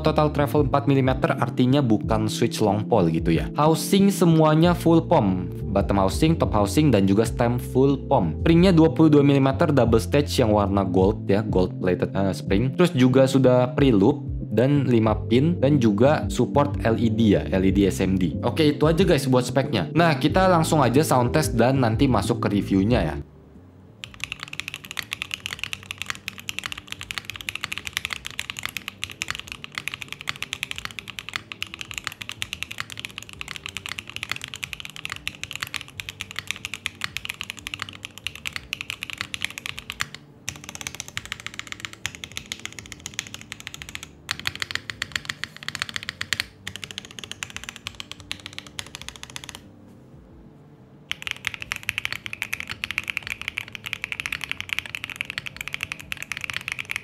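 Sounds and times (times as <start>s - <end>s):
mechanical keyboard typing: 24.0s - 49.7s, 51.1s - 57.0s.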